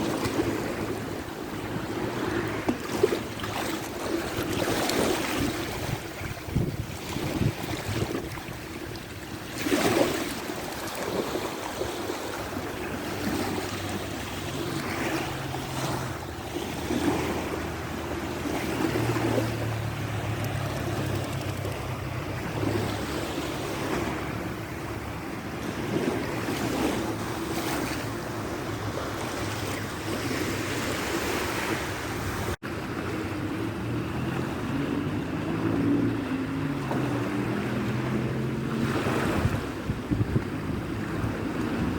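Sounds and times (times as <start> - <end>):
water washing and splashing: 0.0 - 24.3
wind buffeting microphone: 0.0 - 41.9.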